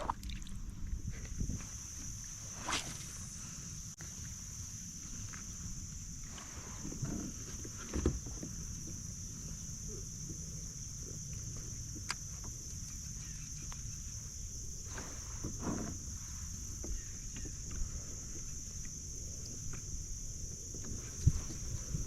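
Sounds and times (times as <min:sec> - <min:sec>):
crickets trilling: 0:00.0 - 0:22.0
low rumble of wind or water: 0:00.0 - 0:22.0.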